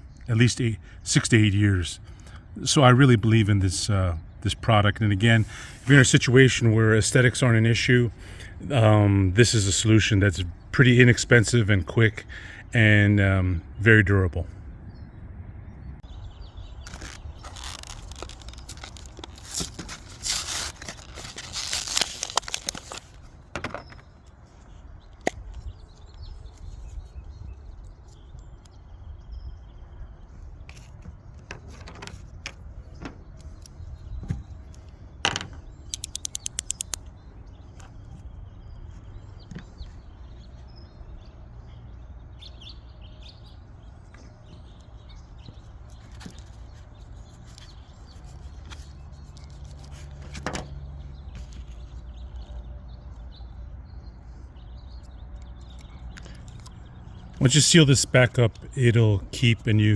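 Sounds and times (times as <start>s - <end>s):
packaging crackling and rustling: 16.8s - 23.5s
sharp clicks and taps: 35.3s - 37.1s.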